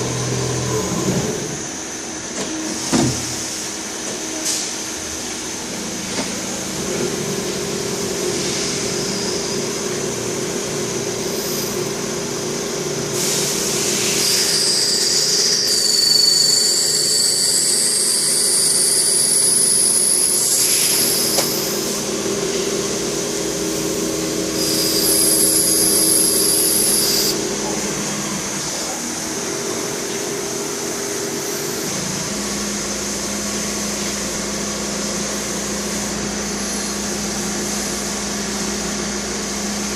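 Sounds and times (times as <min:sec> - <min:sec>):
high spindle whine: 0:13.9 - 0:33.1.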